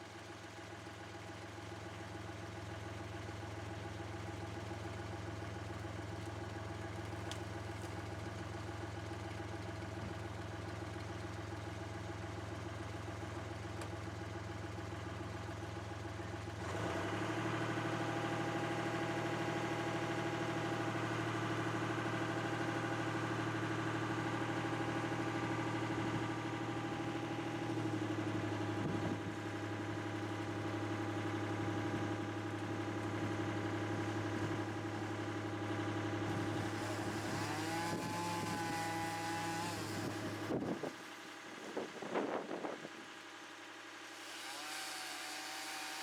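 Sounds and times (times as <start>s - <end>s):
engine idling: 0.0s - 16.6s.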